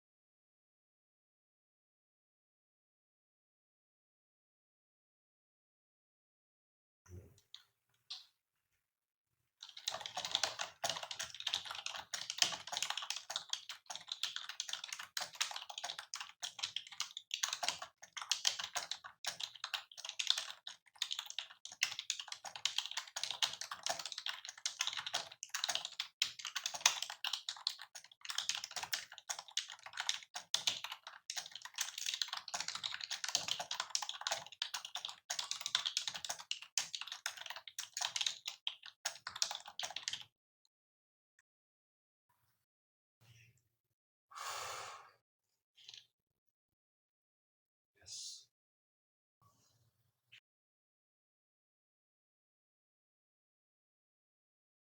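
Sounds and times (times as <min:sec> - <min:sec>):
fast typing on mechanical keyboard: 0:09.6 - 0:40.3.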